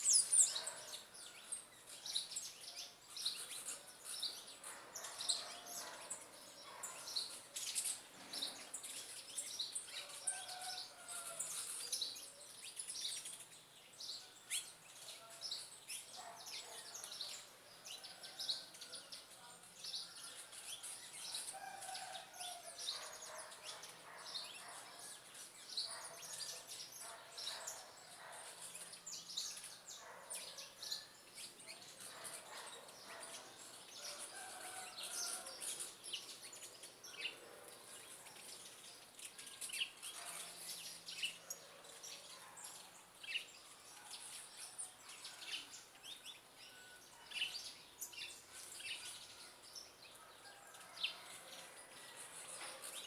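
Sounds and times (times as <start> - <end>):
birds chirping: 31.8 - 41.8.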